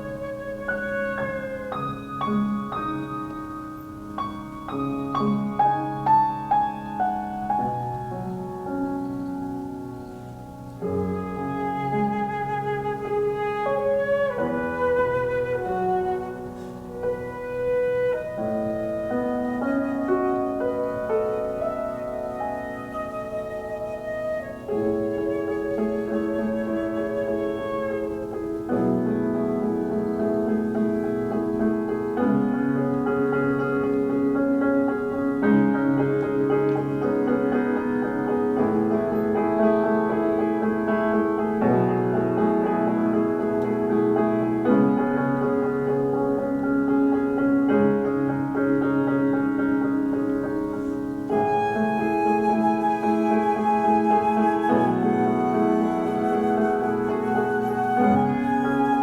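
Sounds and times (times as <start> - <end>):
flute: 0.0 - 46.8, 50.6 - 59.0
piano chords: 0.0 - 59.0.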